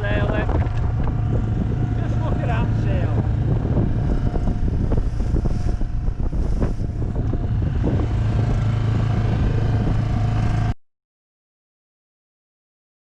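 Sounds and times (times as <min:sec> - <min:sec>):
boat motor running: 0:00.0 - 0:10.8
wind buffeting microphone: 0:00.0 - 0:10.8.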